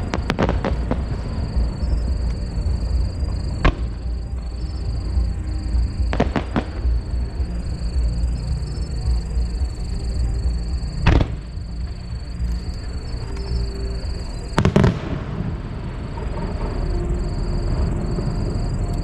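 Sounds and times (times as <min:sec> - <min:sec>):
fireworks bangs: 0:00.0 - 0:05.2, 0:06.0 - 0:07.0, 0:11.0 - 0:12.0, 0:14.5 - 0:16.9
low rumble: 0:00.0 - 0:19.0
music playing: 0:00.0 - 0:19.0.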